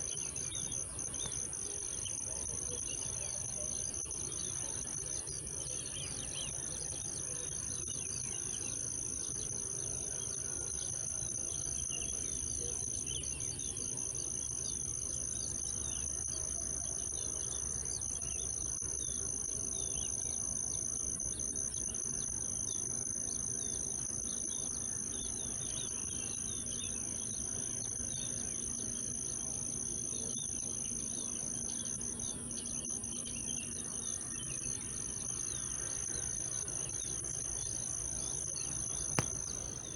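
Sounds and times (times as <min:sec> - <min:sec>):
insects buzzing: 0:00.0 - 0:39.9.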